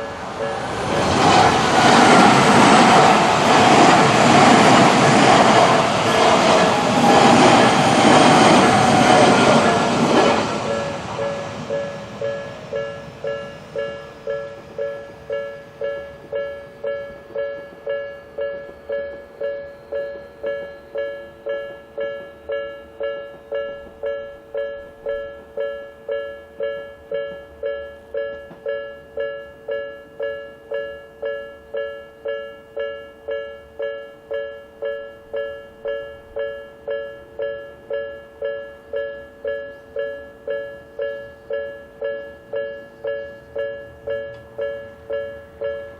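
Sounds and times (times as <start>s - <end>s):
level crossing warning bell: 0.0s - 45.9s
passing train: 0.0s - 45.9s.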